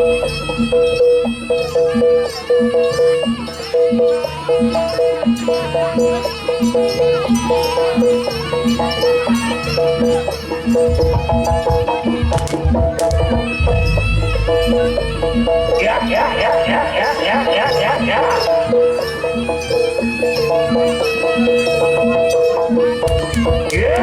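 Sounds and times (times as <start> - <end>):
steady drumming: 10.5 - 18.0, 22.9 - 24.0
heavy deep drumming: 10.8 - 17.0
sharp cracks: 12.3 - 13.5.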